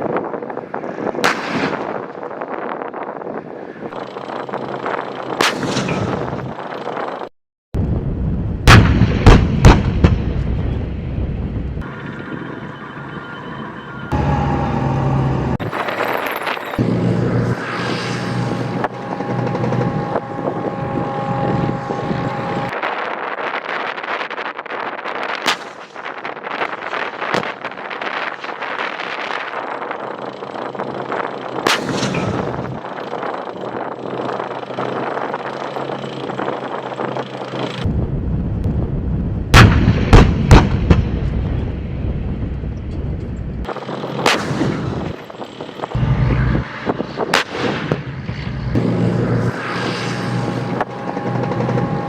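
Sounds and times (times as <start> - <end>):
wind buffeting microphone: 0.0 - 52.0
gunshots: 1.2 - 2.1, 8.6 - 11.0, 39.5 - 41.8, 43.6 - 45.4, 46.8 - 48.8
heavy vehicle engine running: 3.8 - 22.8, 29.5 - 52.0.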